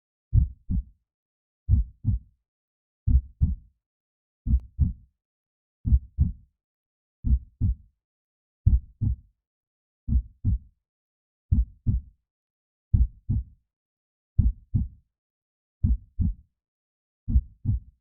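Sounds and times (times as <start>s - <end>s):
heartbeat: 0.3s - 0.9s, 1.7s - 2.2s, 3.1s - 3.6s, 4.5s - 5.0s, 5.9s - 6.4s, 7.2s - 7.8s, 8.7s - 9.2s, 10.1s - 10.6s, 11.5s - 12.0s, 12.9s - 13.5s, 14.4s - 14.9s, 15.8s - 16.4s, 17.3s - 17.8s.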